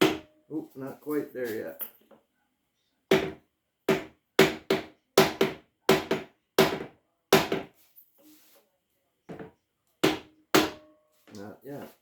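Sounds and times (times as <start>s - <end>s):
hammer pounding on metal: 0.0s - 0.4s, 3.1s - 7.7s, 10.0s - 10.9s.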